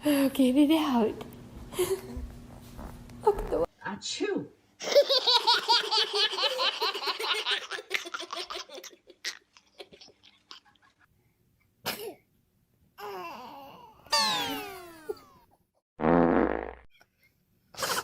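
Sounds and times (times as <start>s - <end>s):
high-pitched laughter: 14.1s - 15.3s.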